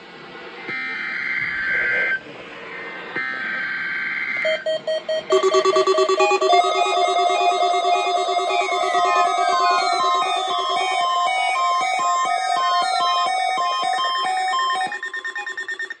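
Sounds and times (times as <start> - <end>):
pulsing electronic beeping tune: 4.4 - 16.0
screechy digital data bursts: 4.5 - 16.0.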